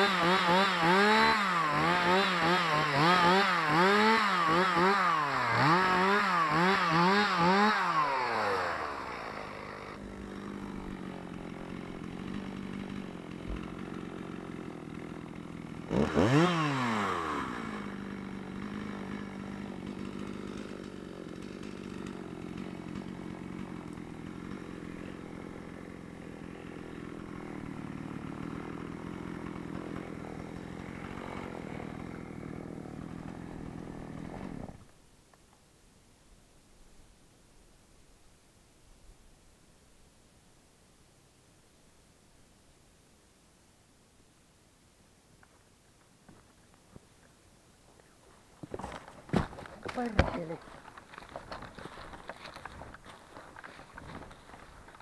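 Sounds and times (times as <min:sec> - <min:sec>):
chainsaw revving and idling: 0:00.0 - 0:35.0, 0:48.6 - 0:55.0.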